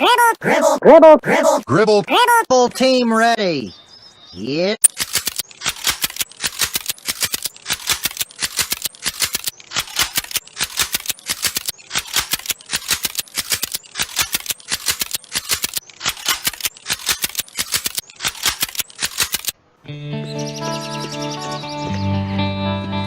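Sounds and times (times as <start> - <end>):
rapid rattling clicks: 4.9 - 19.6.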